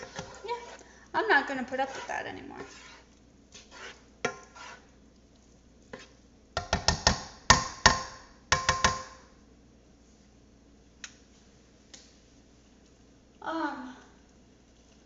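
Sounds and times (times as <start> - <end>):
spoon striking metal pot: 6.6 - 9.2.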